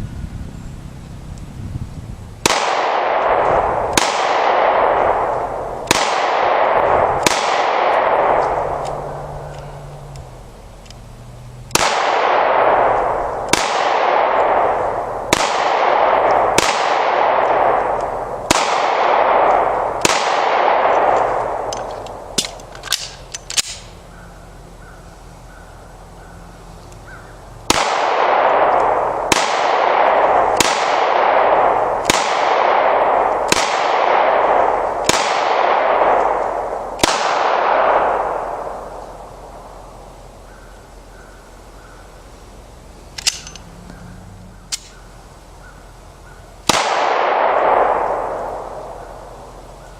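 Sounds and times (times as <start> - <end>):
pistol shots echoing: 2.4 - 9.5, 11.7 - 23.9, 27.7 - 39.0, 46.6 - 49.5
quick metallic clicks: 21.2 - 24.0, 43.1 - 43.7, 44.7 - 45.0.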